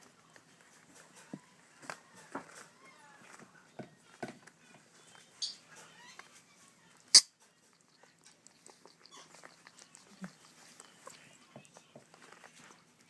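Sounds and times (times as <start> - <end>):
parrot chicks squeaking and calling: 5.0 - 11.4.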